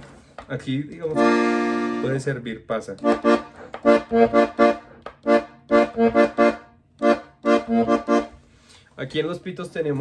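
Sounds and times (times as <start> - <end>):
button accordion chords: 1.1 - 8.5.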